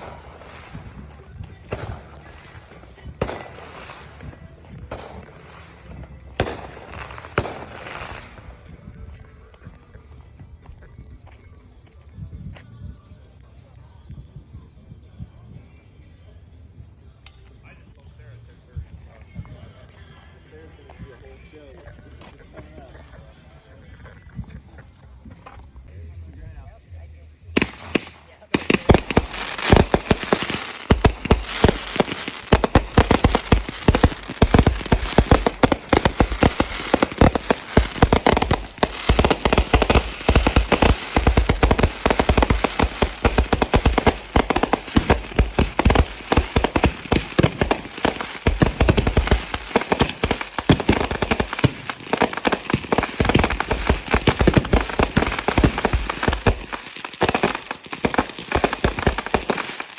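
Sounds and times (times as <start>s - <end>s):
fireworks bangs and crackling: 0.0s - 11.4s, 27.5s - 59.9s.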